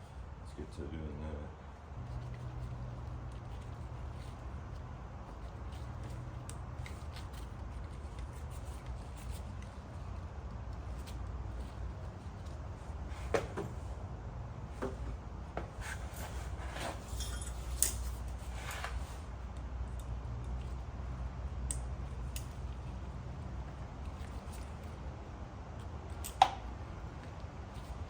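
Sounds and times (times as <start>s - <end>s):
steady low hum: 0.0s - 28.0s
rustling of wires and tape: 1.8s - 13.8s.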